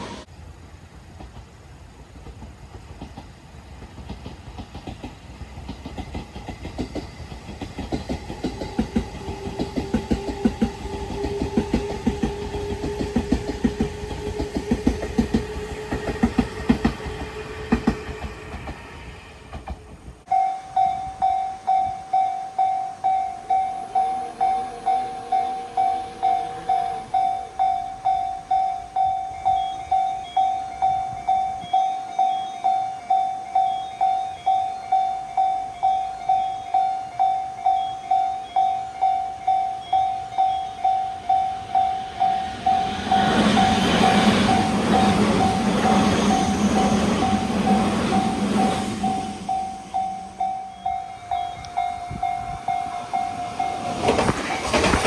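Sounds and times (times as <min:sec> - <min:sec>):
electric train passing: 0:00.0 - 0:55.0
level-crossing warning bell: 0:20.3 - 0:55.0
wheels clacking over rail joints: 0:41.2 - 0:55.0.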